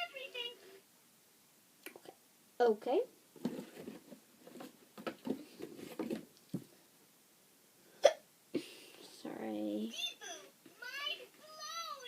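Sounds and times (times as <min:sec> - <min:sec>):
faint movement sounds: 0:03.0 - 0:12.0
person hiccuping: 0:08.0 - 0:08.3.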